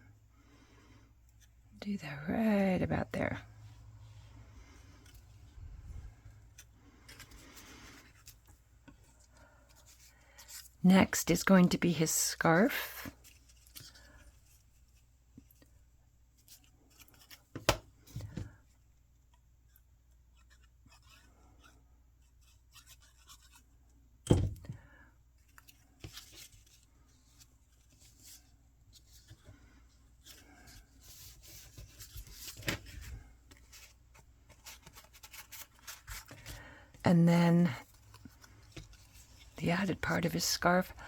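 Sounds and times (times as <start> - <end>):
paper rustling and scraping: 20.3 - 23.7, 25.4 - 36.9.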